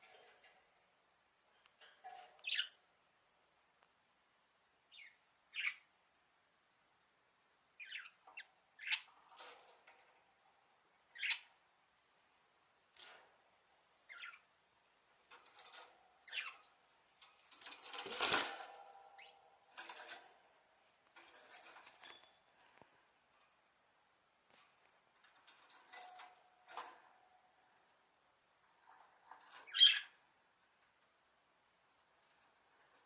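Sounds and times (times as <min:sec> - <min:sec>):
rustling: 0:14.8 - 0:27.8
wings fluttering: 0:17.3 - 0:20.2.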